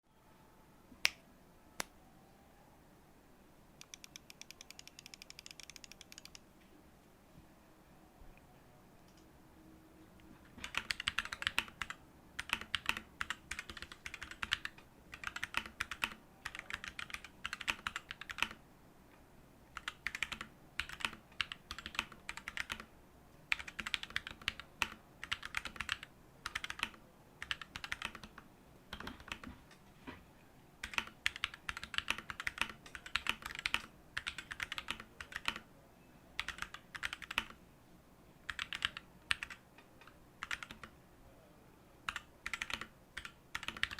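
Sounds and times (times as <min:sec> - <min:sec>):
mechanical keyboard typing: 0:03.8 - 0:06.4, 0:10.5 - 0:18.6, 0:19.8 - 0:22.9, 0:23.5 - 0:29.5, 0:30.8 - 0:35.7, 0:36.4 - 0:37.6, 0:38.5 - 0:40.9, 0:42.1 - 0:43.9.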